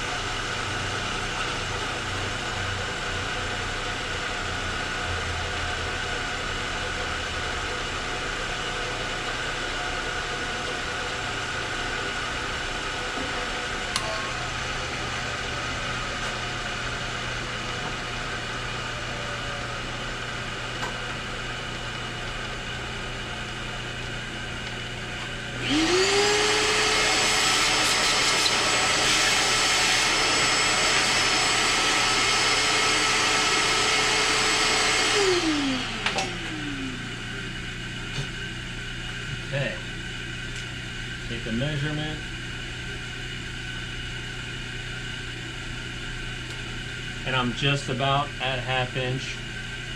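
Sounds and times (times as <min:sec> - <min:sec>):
motor whining: 0:25.5 - 0:38.4
machine tool running: 0:25.6 - 0:37.2.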